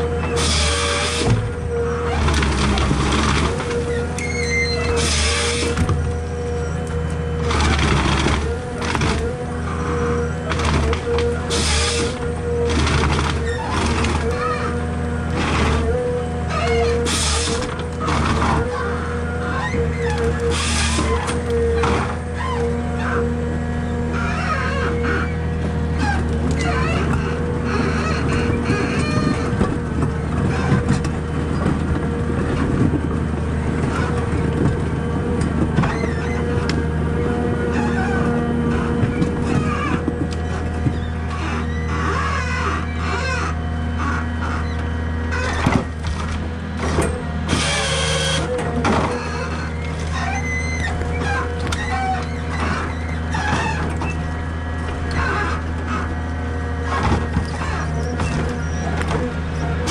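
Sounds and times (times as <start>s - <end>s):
diesel engine under load: 0.0s - 59.9s
machine squeaks: 0.1s - 31.6s, 35.8s - 59.9s.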